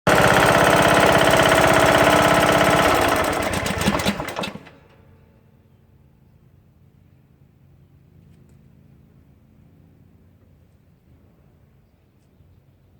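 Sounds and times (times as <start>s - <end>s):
lawn tractor engine knocking: 0.1s - 5.0s.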